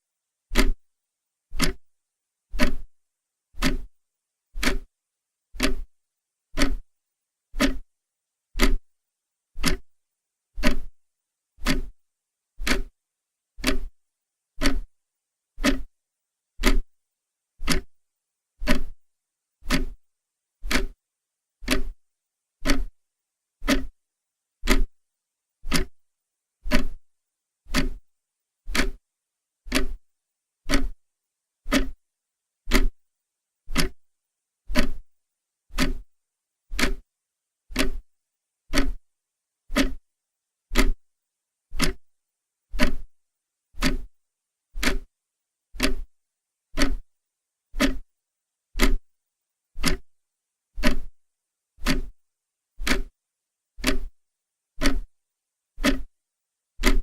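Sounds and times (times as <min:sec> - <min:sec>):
clock ticking: 0:00.5 - 0:00.8, 0:01.6 - 0:01.8, 0:02.6 - 0:02.9, 0:03.6 - 0:03.9, 0:04.6 - 0:04.9, 0:05.6 - 0:05.9, 0:06.6 - 0:06.8, 0:07.6 - 0:07.8, 0:08.6 - 0:08.8, 0:09.6 - 0:09.9, 0:10.6 - 0:10.9, 0:11.6 - 0:11.9, 0:12.6 - 0:12.9, 0:13.6 - 0:13.9, 0:14.6 - 0:14.9, 0:15.6 - 0:15.9, 0:16.6 - 0:16.9, 0:17.6 - 0:17.9, 0:18.6 - 0:19.0, 0:19.6 - 0:20.0, 0:20.6 - 0:21.0, 0:21.6 - 0:22.0, 0:22.6 - 0:22.9, 0:23.6 - 0:23.9, 0:24.6 - 0:24.9, 0:25.7 - 0:26.0, 0:26.7 - 0:27.0, 0:27.7 - 0:28.0, 0:28.7 - 0:29.0, 0:29.7 - 0:30.0, 0:30.7 - 0:31.0, 0:31.7 - 0:32.0, 0:32.7 - 0:33.0, 0:33.7 - 0:34.0, 0:34.7 - 0:35.0, 0:35.7 - 0:36.1, 0:36.7 - 0:37.0, 0:37.7 - 0:38.1, 0:38.7 - 0:39.0, 0:39.7 - 0:40.0, 0:40.7 - 0:41.0, 0:41.8 - 0:42.1, 0:42.8 - 0:43.1, 0:43.8 - 0:44.1, 0:44.8 - 0:45.1, 0:45.8 - 0:46.1, 0:46.8 - 0:47.1, 0:47.8 - 0:48.0, 0:48.8 - 0:49.0, 0:49.8 - 0:50.1, 0:50.8 - 0:51.1, 0:51.8 - 0:52.2, 0:52.8 - 0:53.1, 0:53.8 - 0:54.2, 0:54.8 - 0:55.1, 0:55.8 - 0:56.1.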